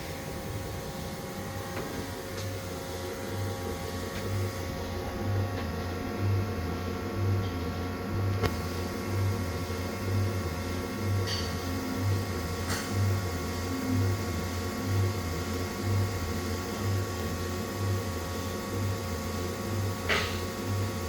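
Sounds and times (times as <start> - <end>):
lathe machine hum with throb: 0.0 - 21.0.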